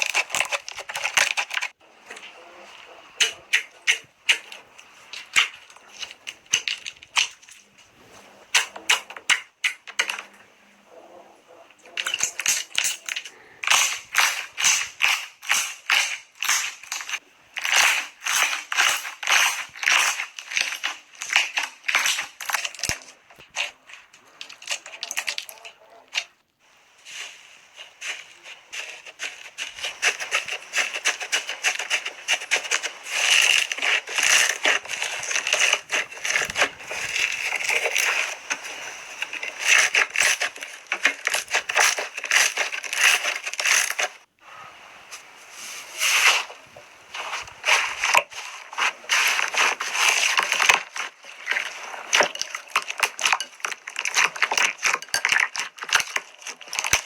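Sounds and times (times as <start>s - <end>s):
slime crackling and popping: 12.0s - 23.6s.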